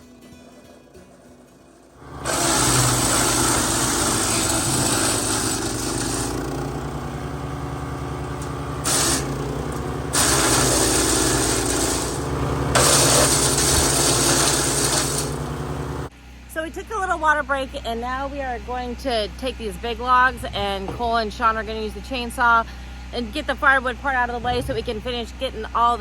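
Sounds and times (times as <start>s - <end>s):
wood chipper engine running: 1.8s - 16.5s.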